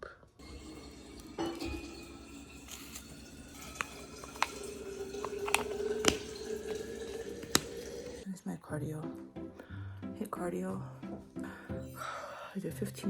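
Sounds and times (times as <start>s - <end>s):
soup pouring into container: 0.4s - 8.2s
utensil clicks: 3.6s - 7.8s.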